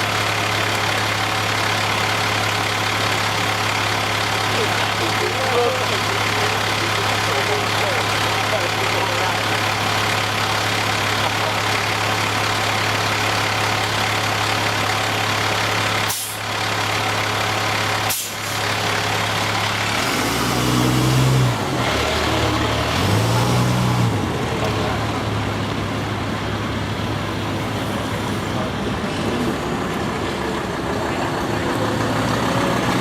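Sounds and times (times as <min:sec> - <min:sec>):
large vehicle engines running: 0:00.0 - 0:33.0
sharp air hisses: 0:16.1 - 0:16.4, 0:18.1 - 0:18.6.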